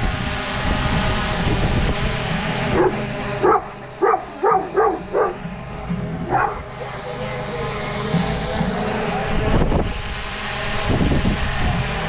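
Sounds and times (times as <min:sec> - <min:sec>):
drone propellers humming: 0:00.0 - 0:12.0
dog barking: 0:02.7 - 0:05.4, 0:06.3 - 0:06.9.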